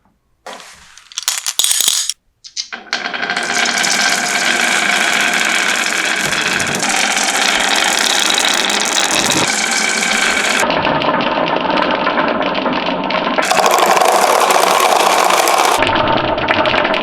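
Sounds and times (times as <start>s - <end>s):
toy motor running with rattle: 3.6s - 10.6s, 13.4s - 15.8s.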